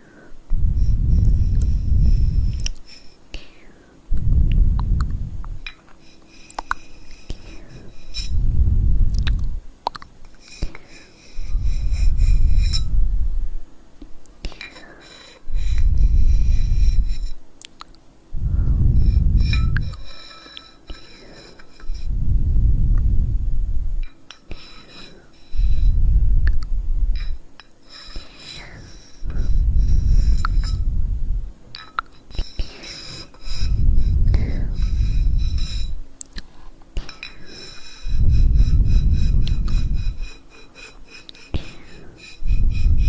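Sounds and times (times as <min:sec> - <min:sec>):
breathing into microphone: 0:00.0 - 0:09.7, 0:14.6 - 0:17.4, 0:18.3 - 0:31.6, 0:32.4 - 0:43.0
soft hissing breaths: 0:00.0 - 0:43.0
breaths into microphone: 0:32.6 - 0:40.3.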